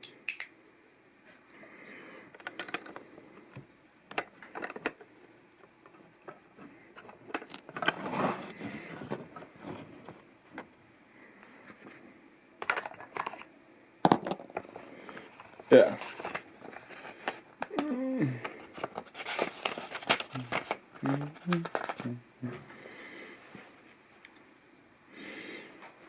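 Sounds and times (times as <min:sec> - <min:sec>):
plastic bricks clicking together: 0:00.3 - 0:00.5
plastic pieces rustling: 0:02.3 - 0:03.0, 0:14.2 - 0:22.1.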